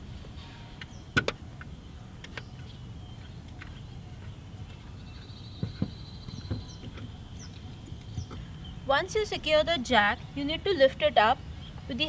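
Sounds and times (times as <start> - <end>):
low outdoor rumble: 0.0 - 12.0
knocks: 5.6 - 7.1.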